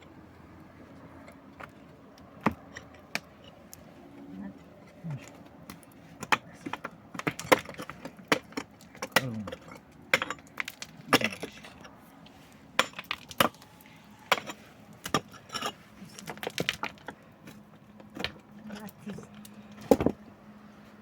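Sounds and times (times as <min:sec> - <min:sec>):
hard objects knocking and clinking: 0:05.6 - 0:12.0, 0:12.8 - 0:13.7, 0:14.3 - 0:20.2.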